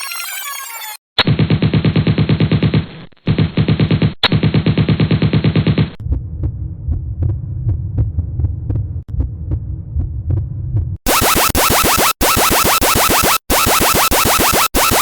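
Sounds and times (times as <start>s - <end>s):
rapid rattling pulse: 11.1s - 15.0s.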